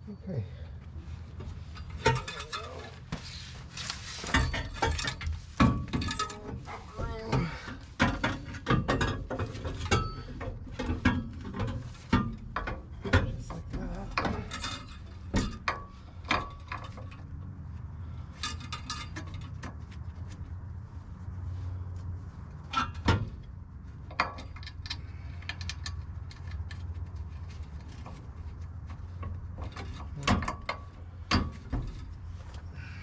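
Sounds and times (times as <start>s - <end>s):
metallic clanks and taps: 24.1s - 27.0s, 29.0s - 32.2s.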